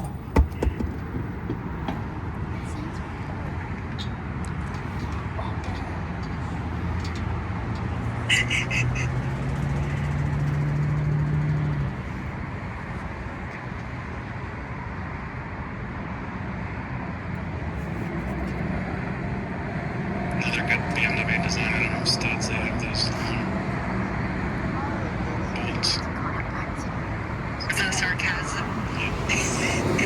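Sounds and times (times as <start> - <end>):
engine drone rising in pitch: 0.0 - 13.4
low traffic rumble: 0.0 - 30.0.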